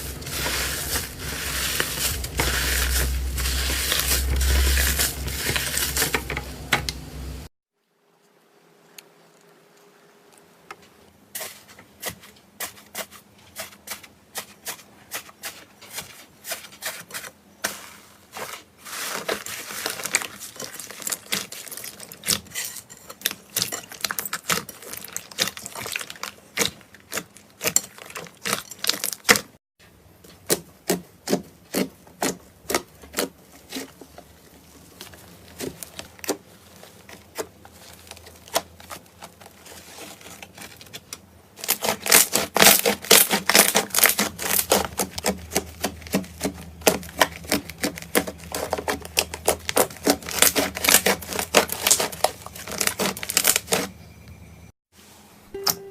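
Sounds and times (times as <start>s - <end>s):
slime popping and crackling: 23.2s - 29.5s, 41.6s - 53.9s.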